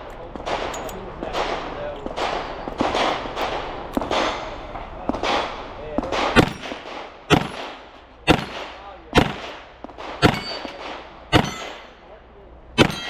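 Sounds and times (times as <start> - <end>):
steel plate clanging: 6.4 - 7.6, 10.2 - 12.0, 12.8 - 13.0.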